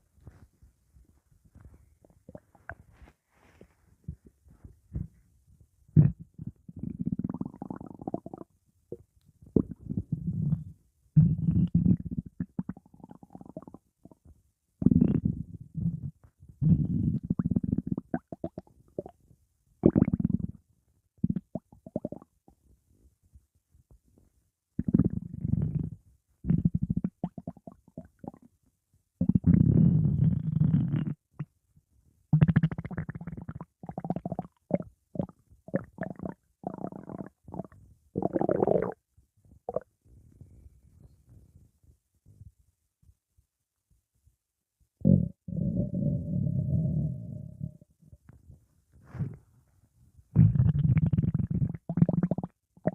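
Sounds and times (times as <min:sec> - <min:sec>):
stomach growling and gurgling: 0:01.6 - 0:03.1, 0:06.0 - 0:19.2, 0:19.8 - 0:20.6, 0:21.2 - 0:22.4, 0:24.8 - 0:28.5, 0:29.2 - 0:31.5, 0:32.4 - 0:39.0, 0:39.6 - 0:39.9, 0:45.0 - 0:47.9, 0:50.3 - 0:52.9.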